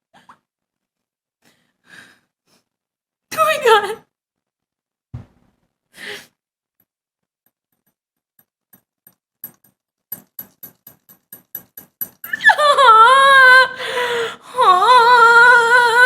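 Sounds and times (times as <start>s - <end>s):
kitchen timer ticking: 9.4s - 12.6s
short breath: 13.8s - 14.5s.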